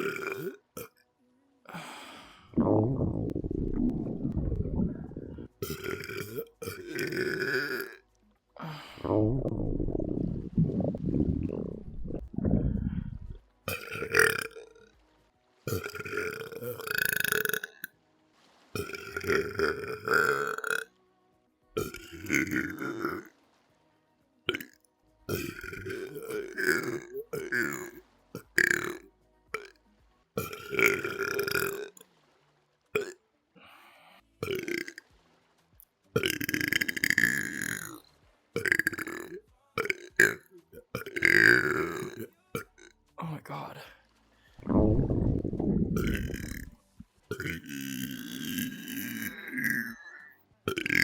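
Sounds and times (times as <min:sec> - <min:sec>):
person belching: 0:00.0 - 0:01.0, 0:01.7 - 0:08.0, 0:08.6 - 0:14.8, 0:15.7 - 0:17.9, 0:18.8 - 0:20.9, 0:21.8 - 0:23.3, 0:24.5 - 0:29.0, 0:30.4 - 0:32.0, 0:33.0 - 0:33.2, 0:34.4 - 0:35.0, 0:36.2 - 0:38.0, 0:38.6 - 0:42.9, 0:44.6 - 0:51.0.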